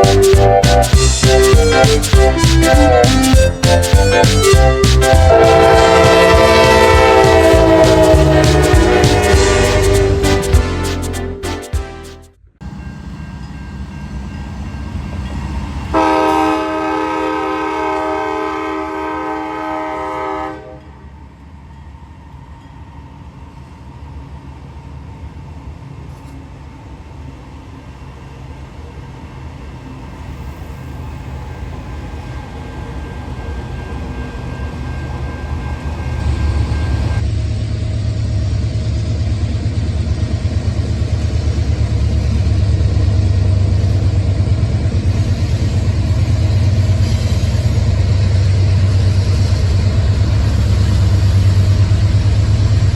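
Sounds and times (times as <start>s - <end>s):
train horn blast: 0.0s - 3.4s, 4.6s - 12.2s, 15.9s - 21.0s
diesel locomotive rumble: 0.0s - 20.5s, 24.6s - 52.9s.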